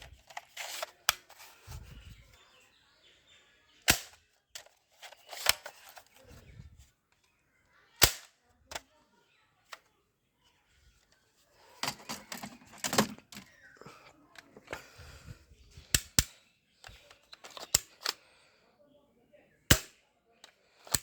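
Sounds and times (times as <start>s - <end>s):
plastic toy gun clicks and rattles: 0.0s - 1.8s, 3.8s - 6.4s, 8.0s - 8.9s, 11.8s - 13.5s, 15.9s - 18.2s, 19.7s - 21.0s.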